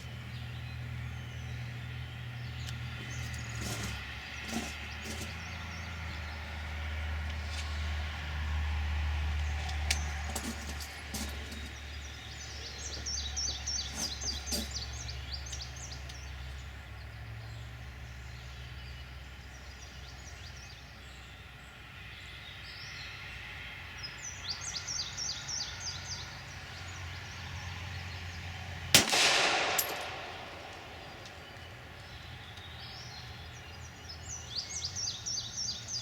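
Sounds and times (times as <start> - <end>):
bird chirping: 9.6 - 23.2, 29.2 - 36.0
steady low hum: 28.9 - 32.6
loud pistol gunshot: 29.0 - 31.8.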